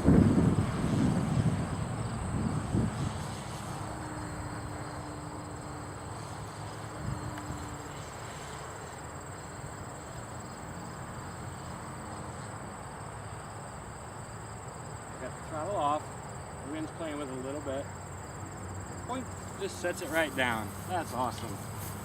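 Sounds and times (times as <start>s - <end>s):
wind rumble on microphone: 0.0s - 8.5s
distant model aircraft motor hum: 0.0s - 13.4s
insects trilling: 0.0s - 22.0s.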